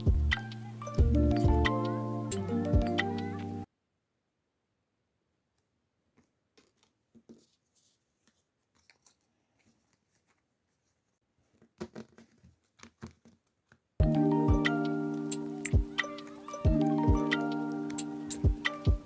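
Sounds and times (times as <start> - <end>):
packaging rustling: 6.1 - 19.0.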